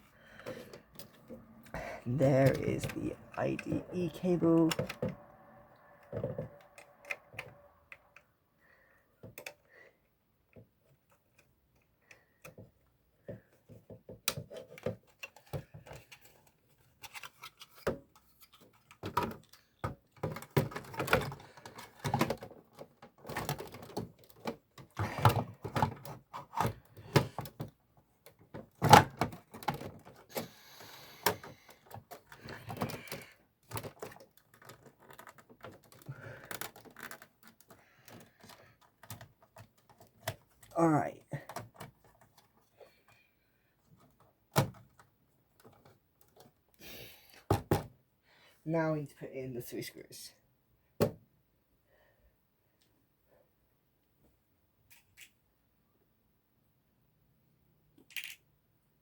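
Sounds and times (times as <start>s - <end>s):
clicking and clattering of console parts: 0.4s - 5.2s, 9.2s - 9.7s, 10.5s - 30.5s, 31.2s - 40.7s, 41.4s - 42.9s.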